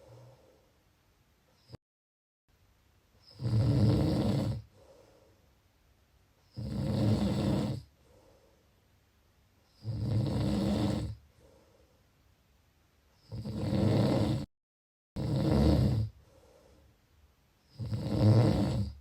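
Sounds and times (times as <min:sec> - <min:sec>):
quiet breath: 0:00.0 - 0:01.8, 0:04.6 - 0:05.8, 0:07.7 - 0:09.0, 0:11.1 - 0:12.4, 0:16.0 - 0:17.8
person snoring: 0:03.3 - 0:04.8, 0:06.5 - 0:07.9, 0:09.7 - 0:11.2, 0:13.2 - 0:14.5, 0:15.2 - 0:16.2, 0:17.7 - 0:19.0.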